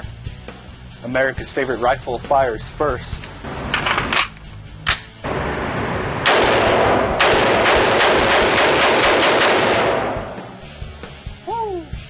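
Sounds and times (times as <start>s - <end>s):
gunshot echo: 5.3s - 10.6s
rifle shots: 6.2s - 10.6s.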